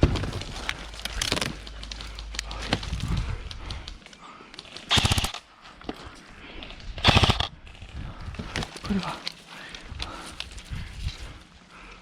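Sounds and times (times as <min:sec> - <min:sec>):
airsoft gun full-auto burst: 0:04.9 - 0:05.4, 0:07.0 - 0:07.5.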